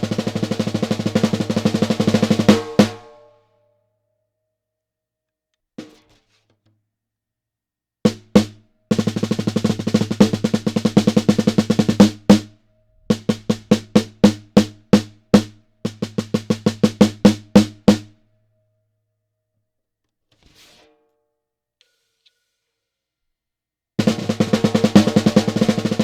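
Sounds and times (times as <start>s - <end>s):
snare drum struck with sticks: 0.0s - 3.2s, 8.1s - 12.5s, 13.1s - 18.1s, 24.0s - 26.0s.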